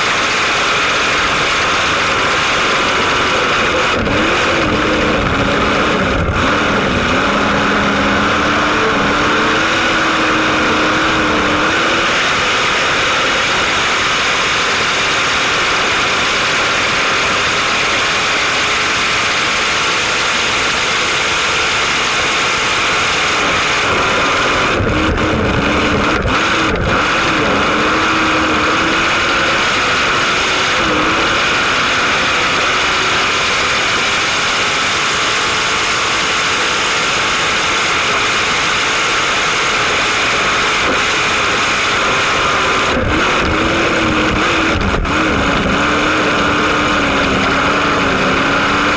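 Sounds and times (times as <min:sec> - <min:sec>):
racing boat engine running: 0:00.0 - 0:48.9.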